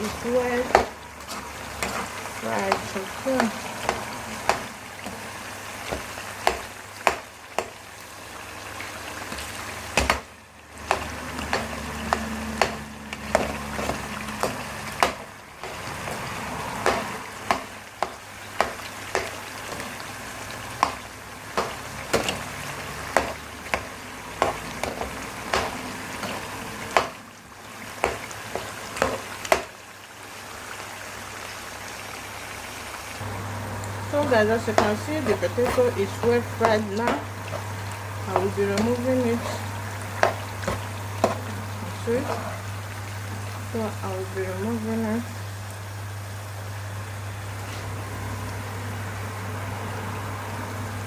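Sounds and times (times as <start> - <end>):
potatoes sizzling in oil: 0.0 - 51.0
spoon knocking against pan: 2.7 - 5.2, 10.0 - 15.8, 23.1 - 27.2.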